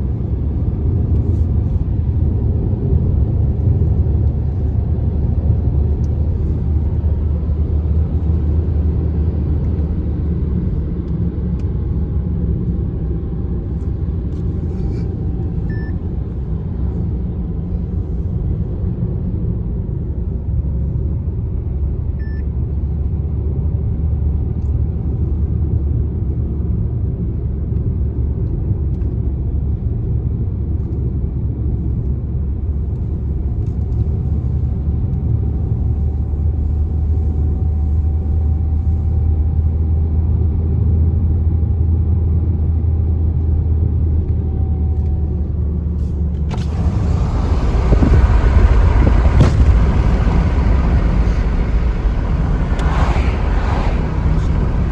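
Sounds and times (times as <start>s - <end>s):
car engine and tyres rumbling: 0.0s - 54.9s
short faint beeps: 15.7s - 16.0s.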